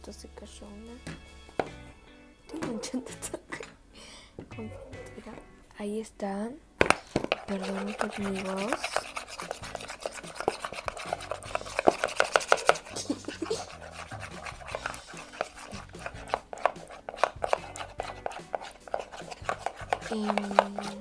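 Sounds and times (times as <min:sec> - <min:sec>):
spoon clicking and scraping container: 0:06.8 - 0:21.0.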